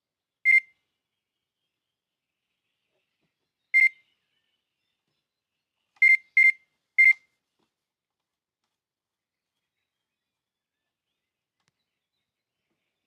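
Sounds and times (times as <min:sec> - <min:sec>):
electronic bite alarm beeping: 0:00.5 - 0:00.7, 0:03.8 - 0:04.0, 0:06.0 - 0:07.2.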